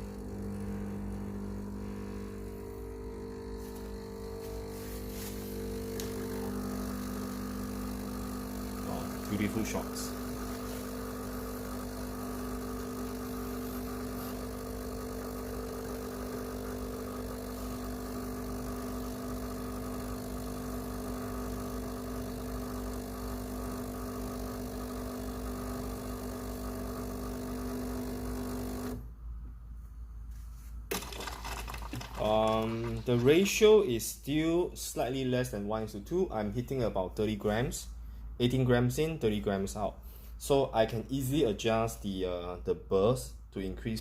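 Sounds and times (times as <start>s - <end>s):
espresso machine pump humming: 0.0s - 29.1s, 30.9s - 33.8s.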